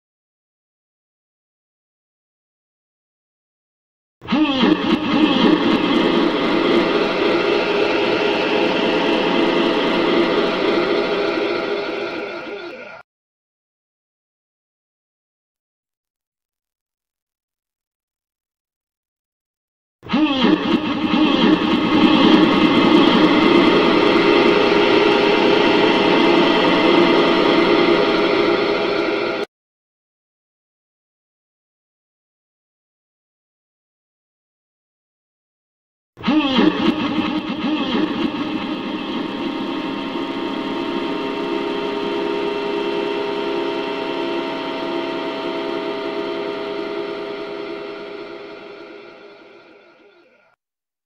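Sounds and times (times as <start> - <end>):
dense keyboard drone: 4.2 - 13.0, 20.1 - 29.5, 36.2 - 50.0.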